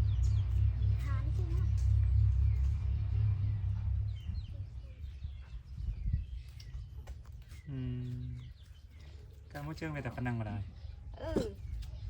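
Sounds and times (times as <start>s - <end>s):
low rumble: 0.0s - 7.4s
low steady hum: 0.0s - 9.2s
small birds chirping: 0.0s - 12.0s.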